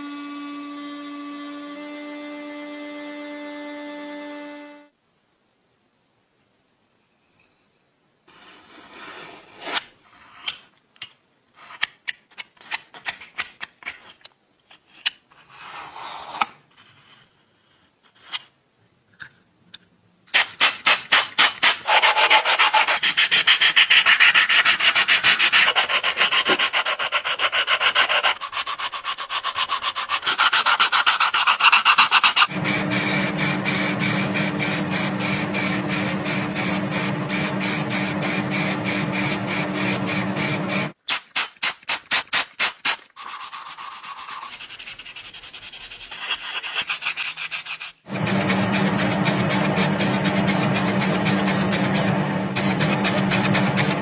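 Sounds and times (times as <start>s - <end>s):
abrasive rubbing strokes: 32.2s - 41.0s, 48.1s - 54.0s
steady low hum: 32.5s - 41.0s, 48.1s - 54.0s.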